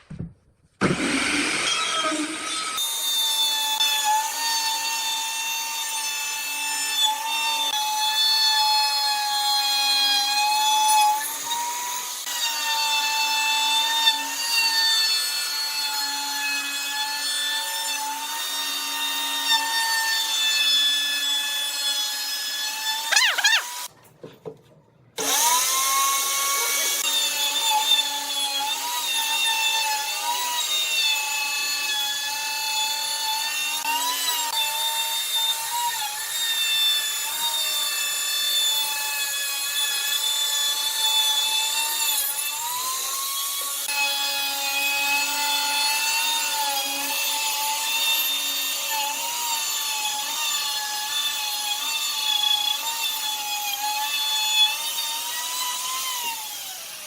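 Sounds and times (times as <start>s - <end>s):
power tool motor whine: 0.8s - 3.5s, 25.2s - 30.4s.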